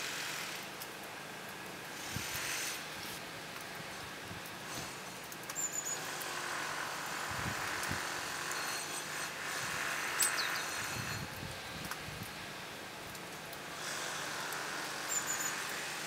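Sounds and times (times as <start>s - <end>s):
steady outdoor hiss: 0.0s - 16.0s
small birds chirping: 10.2s - 10.9s, 15.0s - 15.7s.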